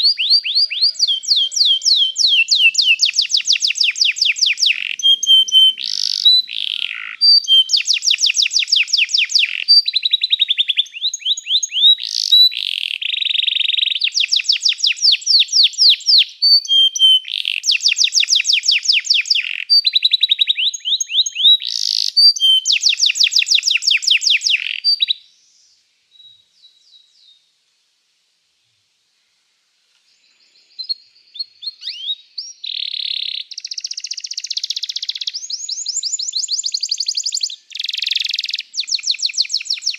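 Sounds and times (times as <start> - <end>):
canary singing trills: 0.0 - 25.2, 30.3 - 39.9.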